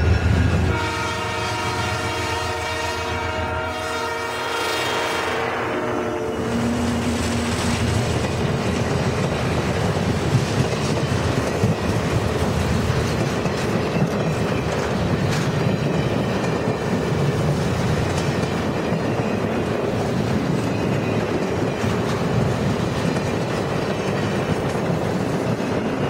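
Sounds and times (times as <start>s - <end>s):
train wheels rumbling on rails: 0.0s - 26.0s
wheels clicking over rail joints: 7.5s - 26.0s.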